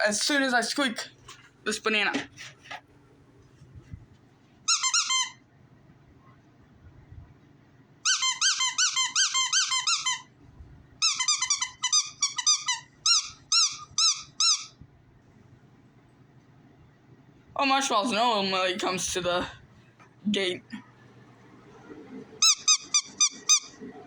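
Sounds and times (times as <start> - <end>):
squeaky dog toy squeaking: 4.7 - 5.4, 8.0 - 10.3, 11.0 - 14.8, 22.4 - 23.8.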